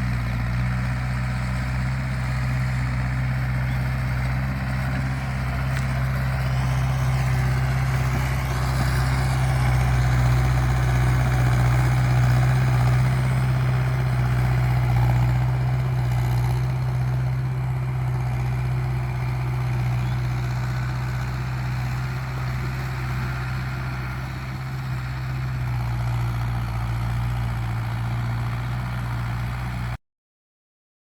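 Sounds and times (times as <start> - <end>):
tractor diesel engine running: 0.0 - 30.0.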